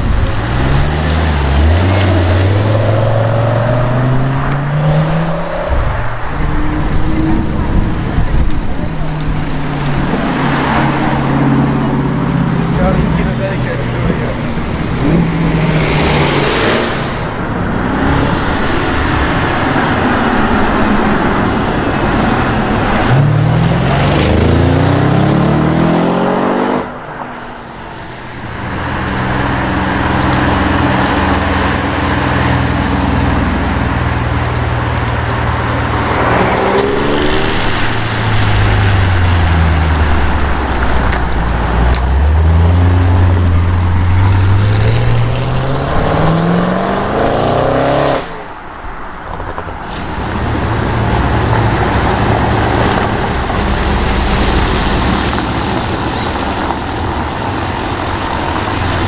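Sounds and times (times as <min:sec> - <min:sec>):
car engine revving: 0:00.0 - 0:27.2, 0:28.4 - 0:48.6, 0:49.5 - 0:59.0.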